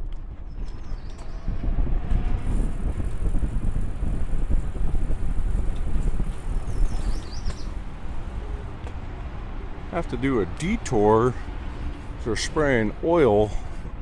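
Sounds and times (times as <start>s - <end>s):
wind buffeting microphone: 0.0s - 14.0s
faint high bird calls: 6.7s - 7.8s.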